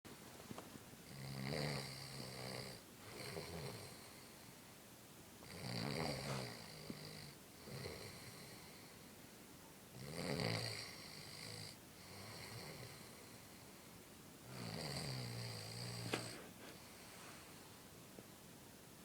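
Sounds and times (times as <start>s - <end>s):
person snoring: 5.5s - 8.7s, 14.5s - 16.5s.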